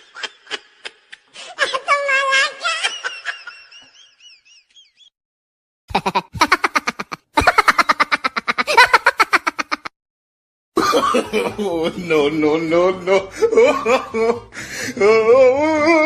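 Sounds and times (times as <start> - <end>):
rapid pulsing laugh: 5.9 - 9.9.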